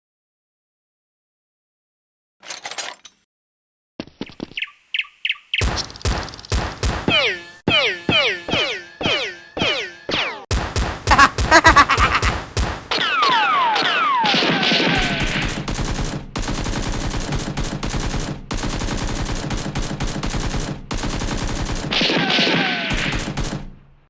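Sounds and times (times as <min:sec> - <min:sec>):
rapid automatic gunfire: 0:14.4 - 0:23.8.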